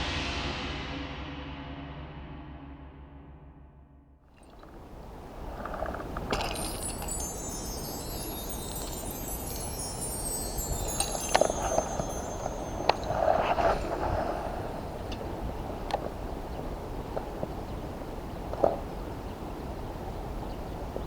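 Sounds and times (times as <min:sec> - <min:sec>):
high shimmering chime: 0:04.4 - 0:15.5.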